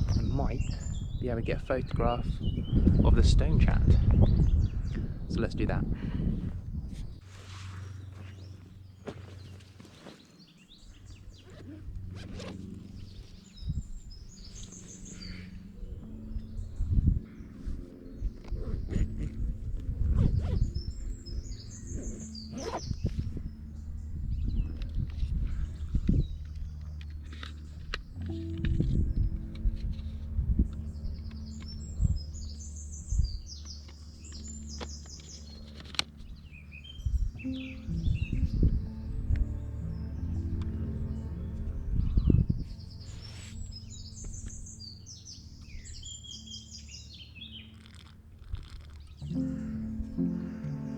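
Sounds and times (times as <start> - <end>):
songbird twittering: 0.0 - 5.4, 7.8 - 50.9
low hum: 11.0 - 50.9
bag zipper pulled open: 11.4 - 13.0, 18.4 - 23.4
high bird chirps: 20.2 - 25.3, 28.2 - 48.0.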